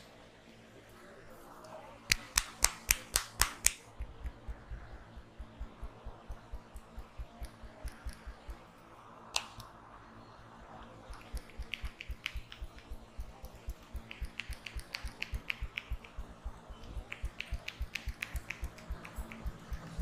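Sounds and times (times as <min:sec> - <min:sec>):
crisp hand-slap clicks: 0:02.1 - 0:04.4, 0:13.4 - 0:16.2, 0:17.0 - 0:20.0
sharp click: 0:06.8 - 0:08.6, 0:11.1 - 0:20.0.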